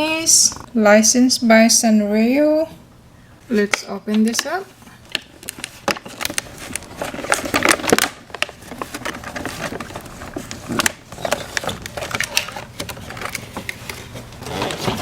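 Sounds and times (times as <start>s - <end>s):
packaging rustling: 4.3s - 15.0s.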